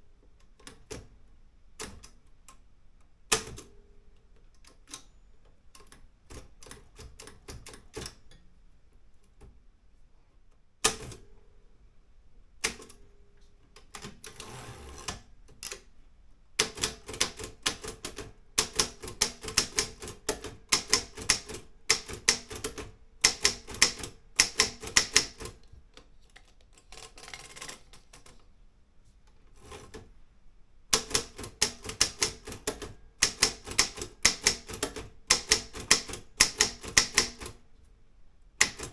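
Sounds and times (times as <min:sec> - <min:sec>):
manual typewriter typing: 0:16.6 - 0:25.7, 0:26.3 - 0:28.4, 0:30.9 - 0:37.6, 0:38.6 - 0:38.9.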